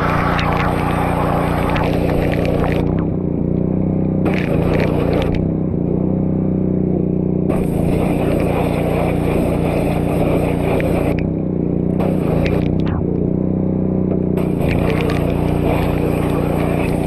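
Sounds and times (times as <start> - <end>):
blast spray hissing: 0.0 - 3.2
pressure washer droning: 0.0 - 5.9, 7.5 - 13.3, 14.4 - 17.0.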